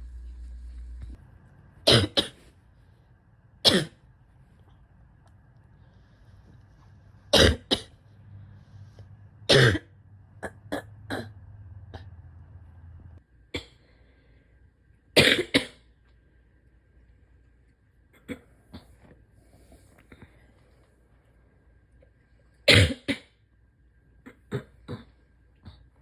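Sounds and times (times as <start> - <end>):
woman coughing: 1.9 - 2.4, 7.4 - 7.9, 9.5 - 11.4.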